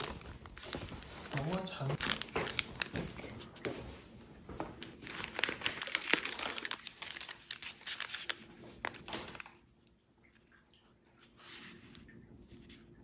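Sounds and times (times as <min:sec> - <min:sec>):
packaging crinkling: 0:00.0 - 0:09.6.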